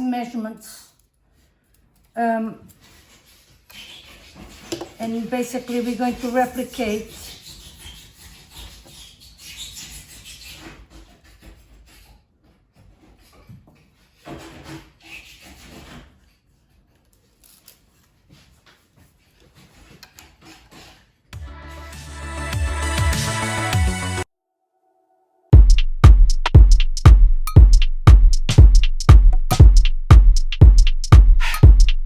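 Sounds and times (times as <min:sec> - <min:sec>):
rubbing and scraping on wood: 0:02.7 - 0:21.3.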